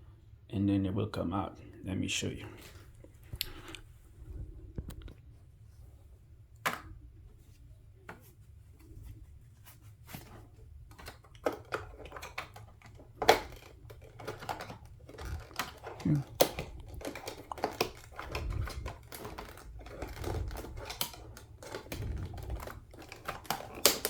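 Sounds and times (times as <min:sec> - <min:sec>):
hard plastic clicks and knocks: 0:10.9 - 0:24.0.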